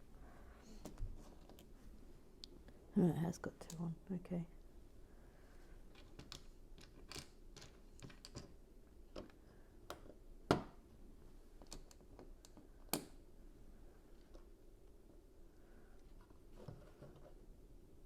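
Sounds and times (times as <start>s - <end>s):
plastic bricks clicking: 6.0s - 8.5s.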